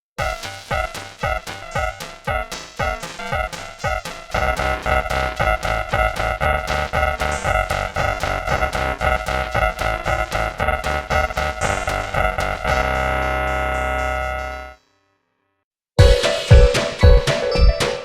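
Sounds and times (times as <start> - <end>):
electronic beat with heavy bass: 0.2 - 14.7, 16.0 - 18.0
synth stabs bending in pitch: 0.2 - 14.8, 16.0 - 18.0.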